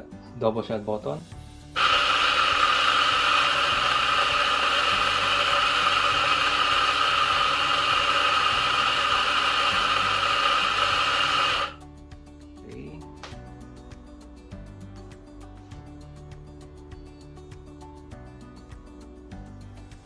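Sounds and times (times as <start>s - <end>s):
faint background music: 0.0s - 1.8s, 2.5s - 20.0s
coffee grinder whine: 1.7s - 11.8s.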